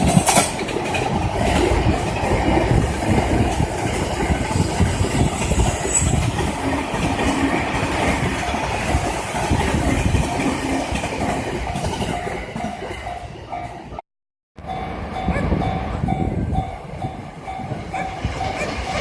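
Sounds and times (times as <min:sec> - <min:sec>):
train wheels clattering: 0:00.0 - 0:13.2
crossing warning bell ringing: 0:03.0 - 0:10.9, 0:11.5 - 0:14.0, 0:14.6 - 0:19.0.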